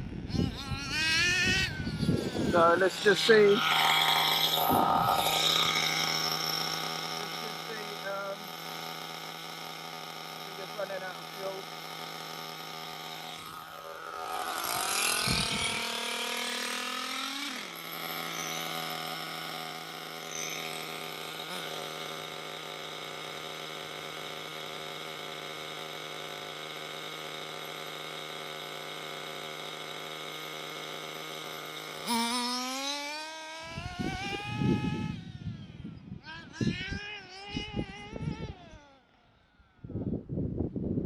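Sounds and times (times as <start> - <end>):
wind buffeting microphone: 0.0 - 3.2, 3.9 - 6.1, 14.7 - 15.8, 33.8 - 38.8, 39.8 - 41.0
model car engine revving: 0.0 - 39.9.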